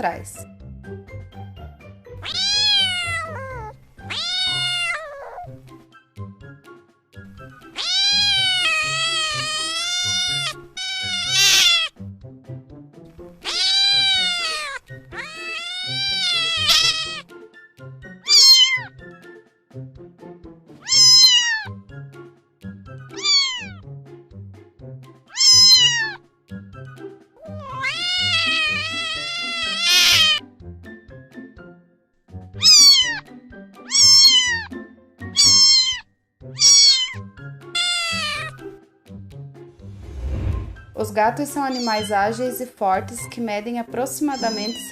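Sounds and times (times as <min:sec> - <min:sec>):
soft background music: 0:00.0 - 0:44.9
cat meowing: 0:02.2 - 0:05.6, 0:07.6 - 0:12.0, 0:13.4 - 0:17.3, 0:18.2 - 0:18.9, 0:20.8 - 0:21.8, 0:23.1 - 0:23.8, 0:25.3 - 0:26.2, 0:27.4 - 0:30.4, 0:32.6 - 0:38.6, 0:41.6 - 0:42.2, 0:44.3 - 0:44.9.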